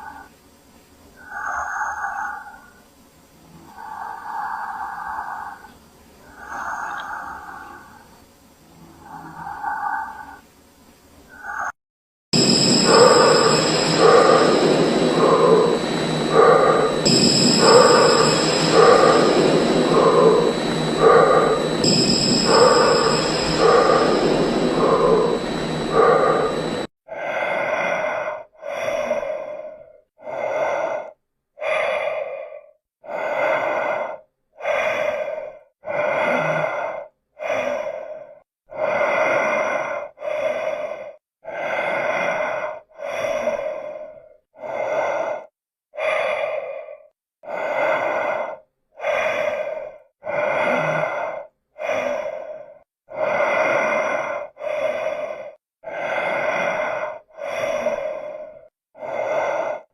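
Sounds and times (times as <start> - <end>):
breathing through a mask: 3.6 - 8.1, 12.4 - 59.9
dense sound: 12.4 - 26.9.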